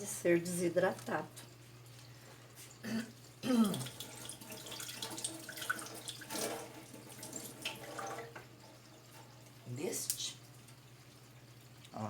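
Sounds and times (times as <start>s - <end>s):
water running and splashing: 2.6s - 11.9s.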